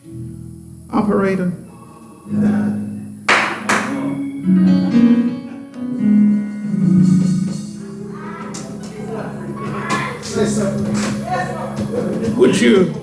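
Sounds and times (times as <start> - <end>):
sustained church music chords: 0.0 - 13.0
sharp hits: 3.3 - 5.3.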